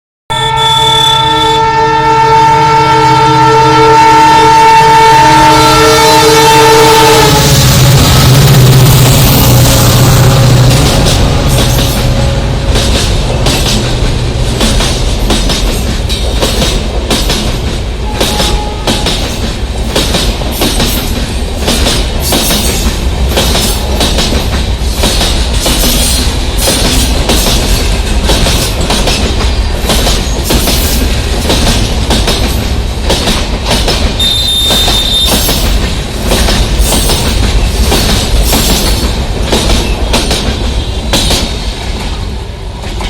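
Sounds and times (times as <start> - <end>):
locomotive horn blast: 0.3 - 12.8, 18.0 - 19.1, 34.2 - 35.6
train coaches rumbling: 1.3 - 43.0
wheels clacking over rail joints: 10.7 - 42.2.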